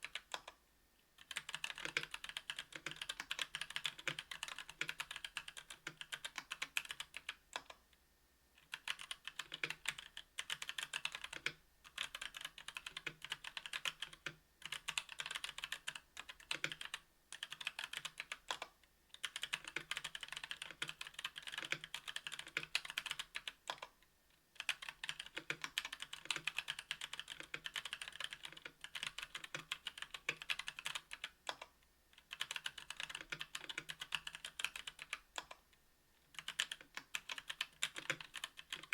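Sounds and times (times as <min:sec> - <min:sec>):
mechanical keyboard typing: 0:00.0 - 0:00.6, 0:01.2 - 0:07.8, 0:08.6 - 0:24.0, 0:24.6 - 0:35.6, 0:36.3 - 0:38.9.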